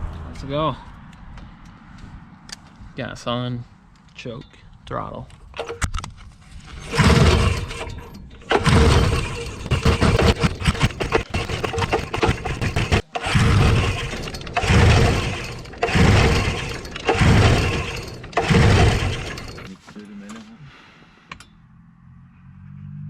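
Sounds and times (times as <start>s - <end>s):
engine pull-start cranking: 5.5s - 19.8s.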